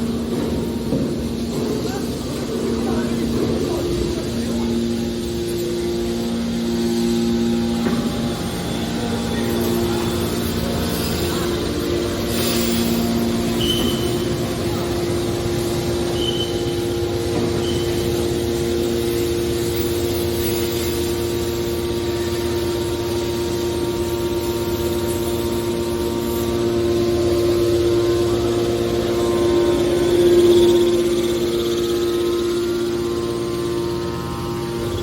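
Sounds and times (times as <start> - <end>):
hydraulic motor humming: 0.0 - 35.0.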